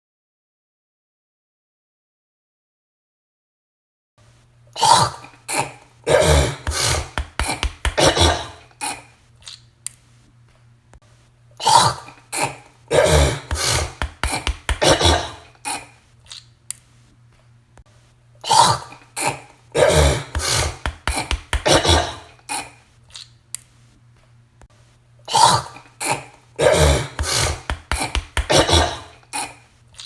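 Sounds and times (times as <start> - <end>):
woman hawking up phlegm: 4.8 - 9.0, 11.6 - 15.9, 18.5 - 22.8, 25.3 - 29.6
woman clearing her throat: 4.8 - 9.1, 11.6 - 15.9, 18.4 - 22.8, 25.3 - 29.6
woman spitting: 4.8 - 9.1, 11.6 - 16.0, 18.4 - 22.8, 25.3 - 29.7.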